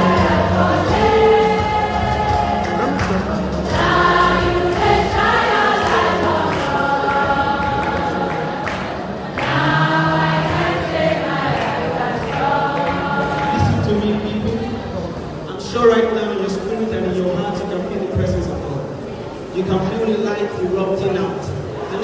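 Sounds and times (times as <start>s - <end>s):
choir singing gospel: 0.0s - 16.6s.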